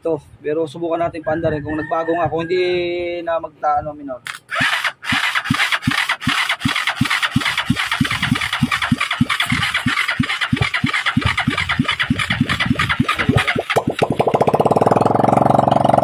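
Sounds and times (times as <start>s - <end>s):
motorcycle engine chugging unevenly: 5.9s - 16.0s.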